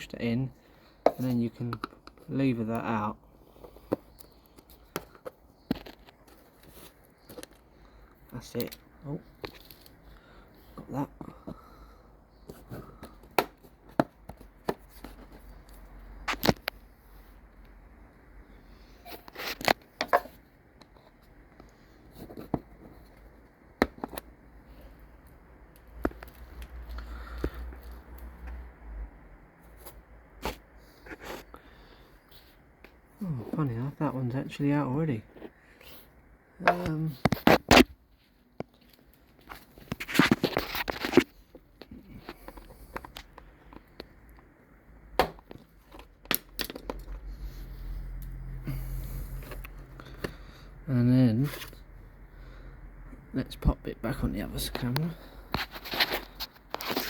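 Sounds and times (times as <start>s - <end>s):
soft handling noise: 0.2s - 50.6s, 54.1s - 57.0s
plastic panels scraping and crunching: 39.4s - 44.0s.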